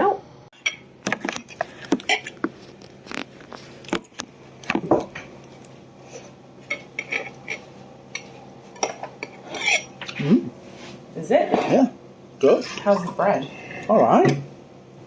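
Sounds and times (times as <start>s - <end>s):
cutlery clinking on plates: 6.7s - 7.6s, 8.2s - 10.2s.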